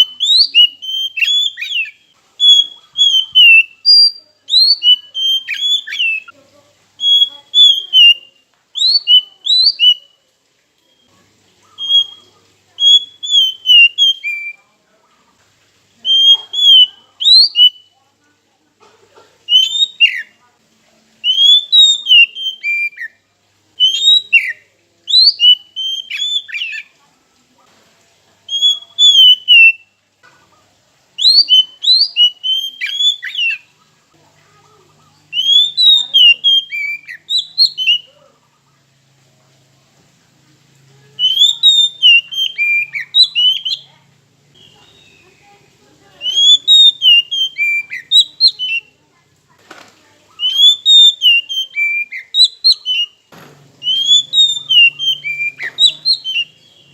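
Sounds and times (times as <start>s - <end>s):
bird singing whistled phrases: 0.0s - 6.4s, 7.0s - 10.2s, 10.8s - 11.1s, 11.7s - 14.7s, 16.0s - 18.0s, 19.5s - 20.4s, 21.2s - 23.2s, 23.8s - 27.0s, 28.5s - 30.0s, 31.2s - 33.7s, 35.2s - 38.2s, 41.2s - 43.9s, 44.5s - 49.0s, 50.3s - 56.9s.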